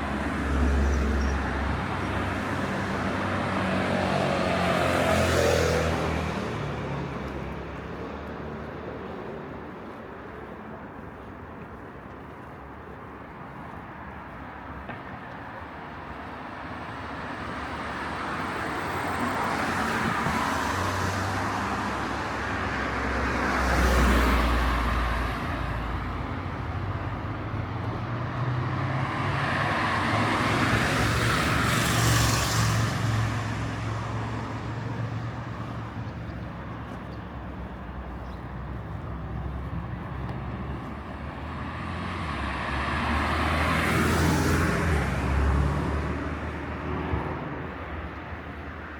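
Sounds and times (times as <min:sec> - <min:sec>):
cars passing: 0:00.0 - 0:48.9.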